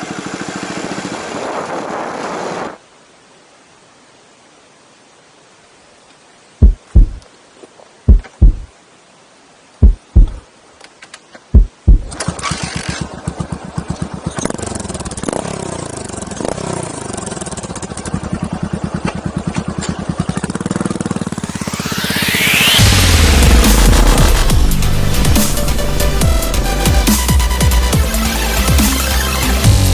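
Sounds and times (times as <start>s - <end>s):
motorcycle engine idling: 13.0s - 21.8s.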